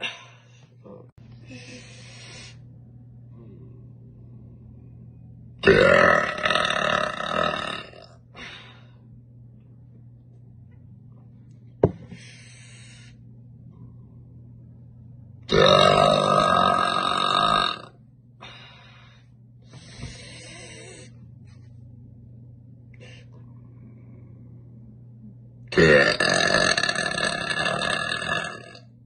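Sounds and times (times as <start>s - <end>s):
woman burping: 5.6s - 8.1s, 25.7s - 28.8s.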